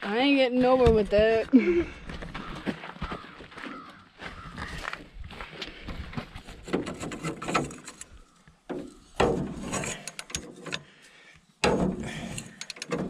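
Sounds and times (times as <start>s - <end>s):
wrench clicking and scraping: 6.8s - 8.2s, 9.6s - 10.9s, 11.7s - 13.0s.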